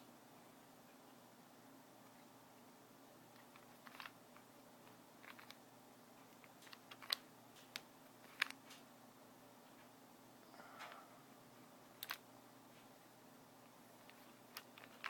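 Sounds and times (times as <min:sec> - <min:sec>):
plastic puzzle cube clicking: 0:03.3 - 0:04.2, 0:05.2 - 0:05.6, 0:06.4 - 0:08.6, 0:12.0 - 0:12.2, 0:14.0 - 0:15.0.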